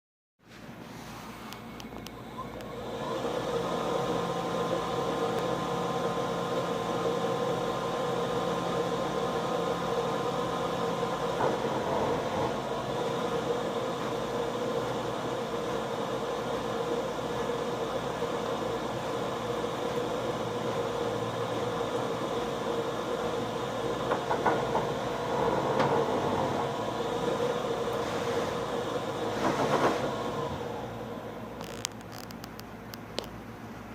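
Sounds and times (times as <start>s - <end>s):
printer mechanical drone: 0.9s - 33.9s.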